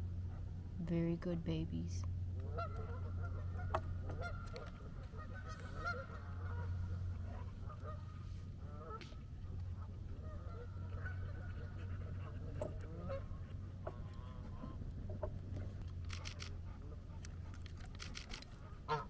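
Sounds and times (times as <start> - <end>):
geese honking: 2.4 - 15.4, 18.8 - 19.0.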